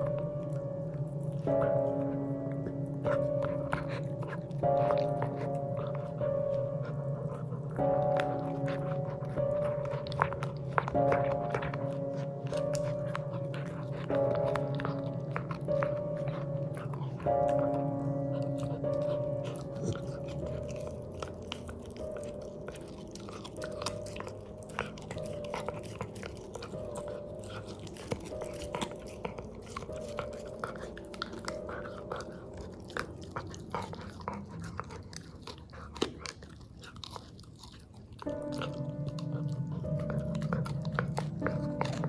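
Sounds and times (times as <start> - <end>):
dog chewing a treat: 0.0 - 42.0.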